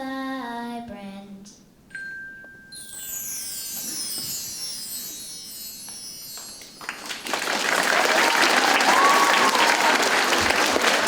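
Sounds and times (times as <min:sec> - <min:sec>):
high metal chimes ringing: 0:01.9 - 0:07.4
audience applause: 0:06.8 - 0:11.0.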